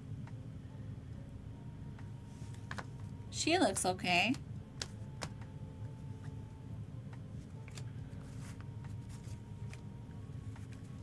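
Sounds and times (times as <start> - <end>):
steady low hum: 0.0 - 11.0
cards clicking and rustling: 2.6 - 3.0, 4.8 - 5.5, 7.6 - 9.8.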